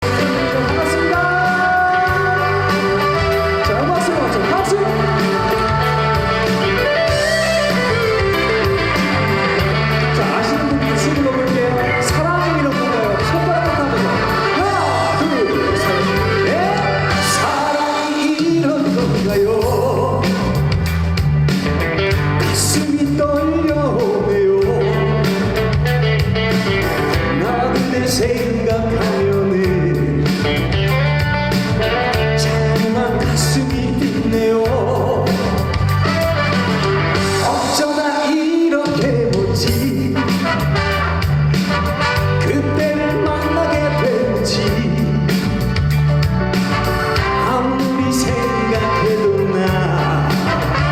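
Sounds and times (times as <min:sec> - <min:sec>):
trot song with sung melody: 0:00.0 - 0:50.9.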